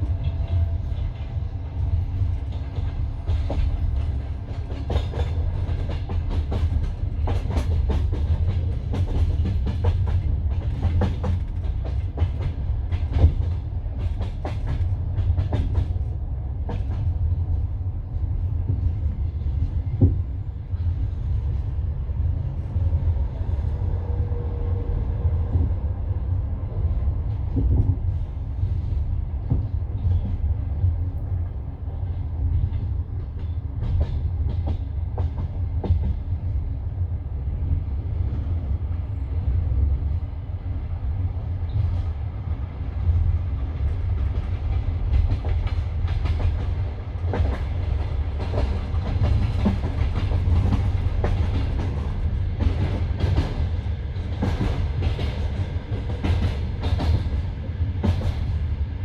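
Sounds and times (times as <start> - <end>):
train carriage rumble: 0.0 - 59.0
train wheels clacking over rail joints: 2.0 - 17.1, 43.7 - 58.8.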